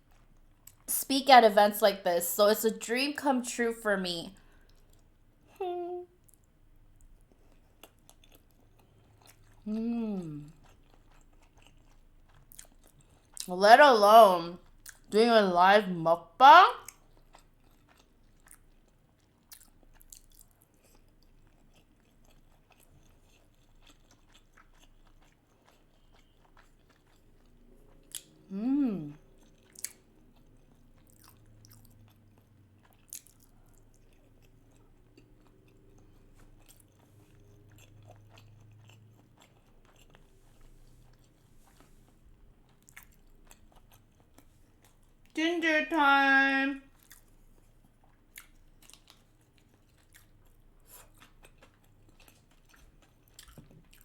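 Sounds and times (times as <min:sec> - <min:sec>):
person chewing food: 0:00.0 - 0:00.9, 0:04.3 - 0:13.5, 0:14.6 - 0:15.1, 0:16.8 - 0:45.3, 0:46.8 - 0:54.0
person humming mmm: 0:05.6 - 0:06.1, 0:09.7 - 0:10.5, 0:28.5 - 0:29.2.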